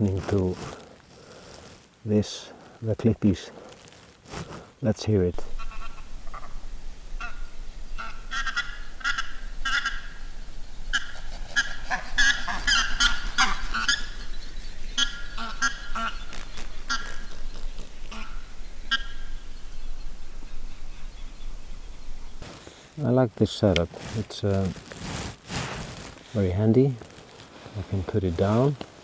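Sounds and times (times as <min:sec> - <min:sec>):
geese honking: 0:05.4 - 0:19.7.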